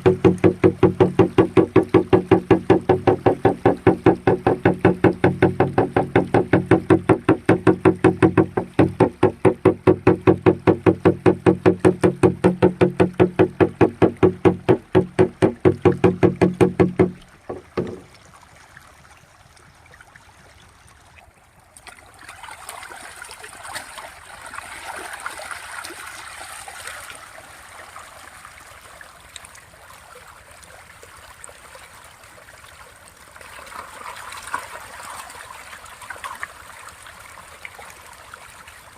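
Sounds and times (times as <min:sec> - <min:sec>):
rapid pulsing beat: 0:00.0 - 0:17.2
water trickling and splashing: 0:00.0 - 0:38.9.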